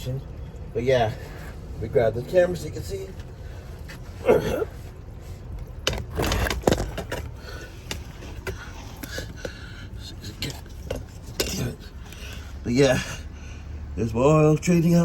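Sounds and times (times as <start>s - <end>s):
handling knocks and clicks: 5.6s - 9.6s.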